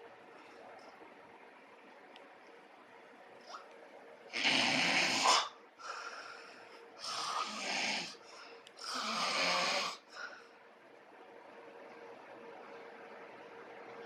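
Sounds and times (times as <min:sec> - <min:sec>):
person snoring loudly: 0:04.3 - 0:05.6, 0:07.0 - 0:08.2, 0:08.8 - 0:10.1.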